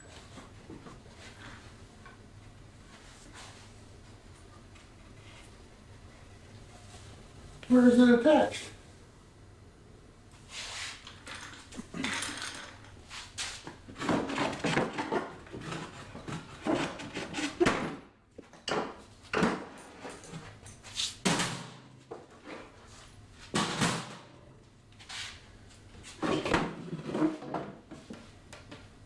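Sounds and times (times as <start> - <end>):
tools and parts clattering: 11.0 - 22.8, 23.5 - 24.4.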